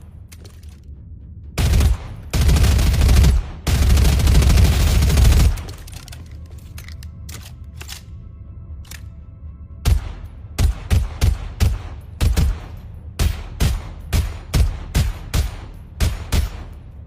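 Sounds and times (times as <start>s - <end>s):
submachine gun automatic fire: 1.6s - 5.9s
quiet gun clicks: 5.6s - 8.2s, 8.8s - 9.2s.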